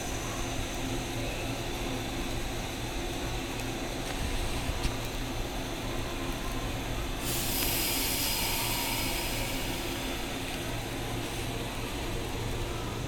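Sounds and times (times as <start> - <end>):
train low hum: 0.0 - 13.0
compressed air hiss: 7.2 - 10.4.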